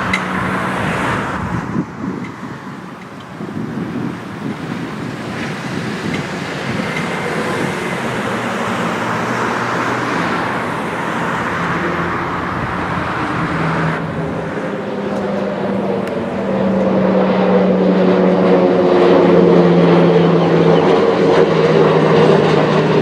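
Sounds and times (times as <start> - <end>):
aircraft engines rushing: 0.0 - 23.0.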